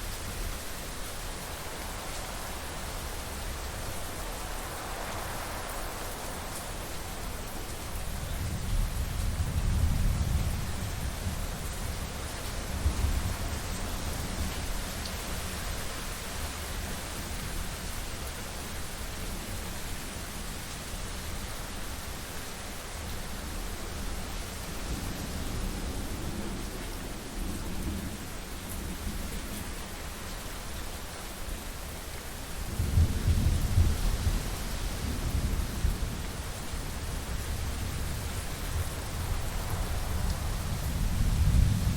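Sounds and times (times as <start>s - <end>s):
rain hiss: 0.0s - 41.9s
low rumble of thunder: 2.4s - 15.2s, 23.7s - 29.9s, 32.5s - 41.9s
wind rumble: 32.5s - 41.9s.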